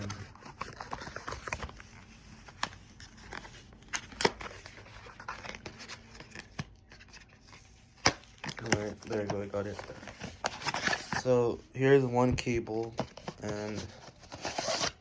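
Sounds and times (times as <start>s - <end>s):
plastic packaging crinkling: 0.0s - 11.3s.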